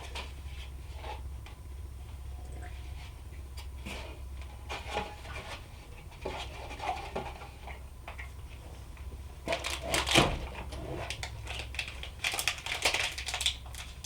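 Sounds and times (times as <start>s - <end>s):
loud crinkling rustle: 9.5s - 14.0s
snack packaging rustling: 10.9s - 14.0s.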